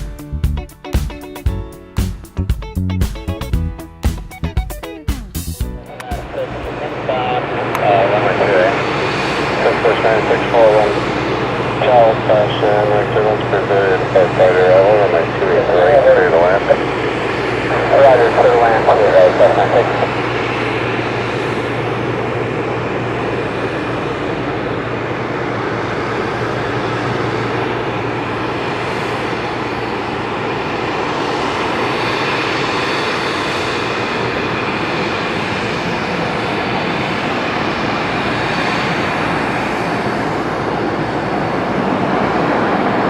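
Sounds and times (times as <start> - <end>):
turboprop engine and propeller noise: 0.0 - 43.0
low hum: 5.5 - 30.4.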